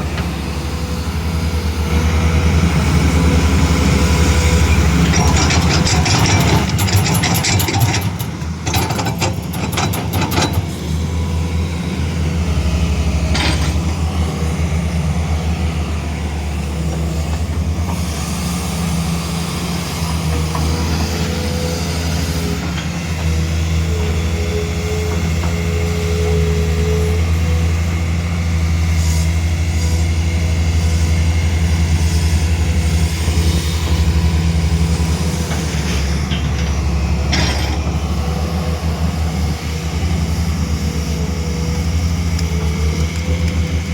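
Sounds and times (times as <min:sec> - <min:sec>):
excavator diesel engine running: 0:00.0 - 0:43.9.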